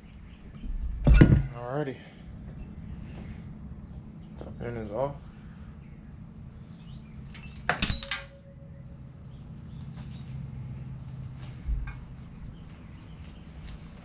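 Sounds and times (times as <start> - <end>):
metal engine parts clattering: 7.2 - 8.6.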